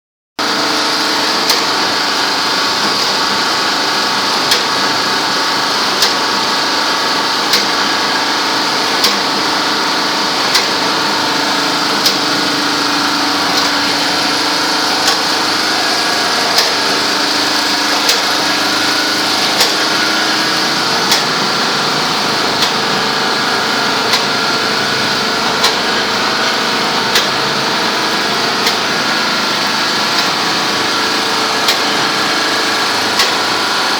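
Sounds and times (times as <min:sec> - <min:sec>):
packaging machine running: 0:00.4 - 0:33.9.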